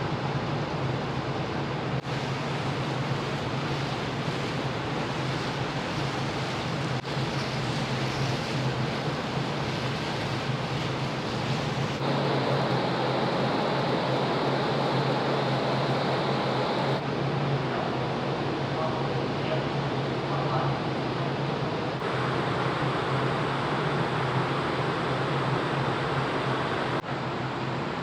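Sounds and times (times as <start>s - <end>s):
ship engine hum: 2.0s - 17.0s, 21.9s - 28.0s
wind and water rushing: 2.0s - 17.0s.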